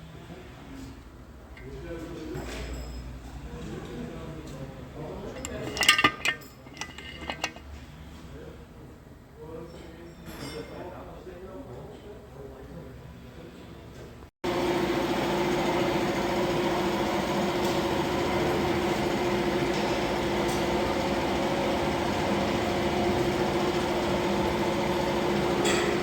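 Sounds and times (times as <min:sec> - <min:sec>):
car engine running with rattle: 0:16.0 - 0:26.0.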